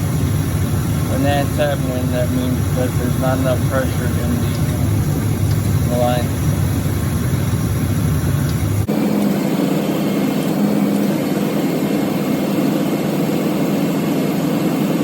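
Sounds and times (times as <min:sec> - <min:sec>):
engine idling: 0:00.0 - 0:15.0
steady compressor hum: 0:00.0 - 0:15.0.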